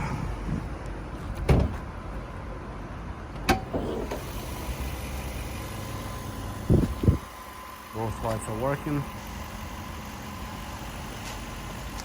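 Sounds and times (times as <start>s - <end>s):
car engine idling: 0.0s - 12.0s
thump: 1.4s - 1.8s.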